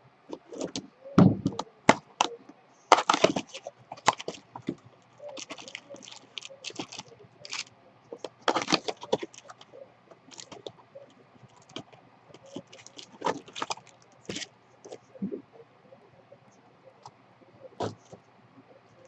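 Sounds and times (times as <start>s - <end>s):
packaging crinkling and rustling: 3.0s - 9.7s, 11.4s - 15.0s.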